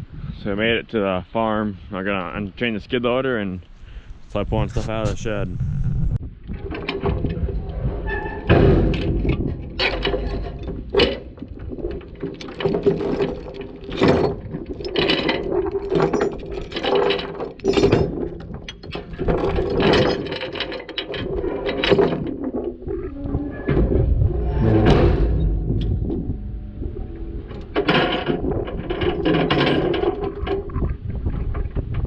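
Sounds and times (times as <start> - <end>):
steady hum: 3.7 - 6.5, 23.7 - 28.9
metal chains clanking and rattling: 6.5 - 30.9.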